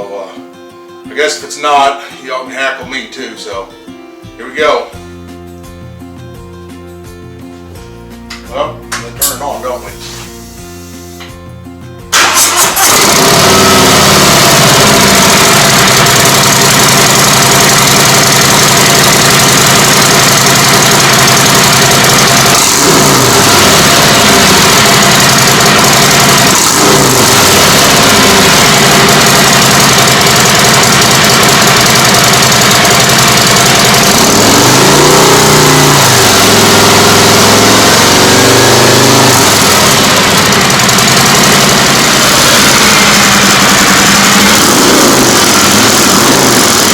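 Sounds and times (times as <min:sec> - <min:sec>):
motorcycle engine idling and revving: 0:12.2 - 0:46.9.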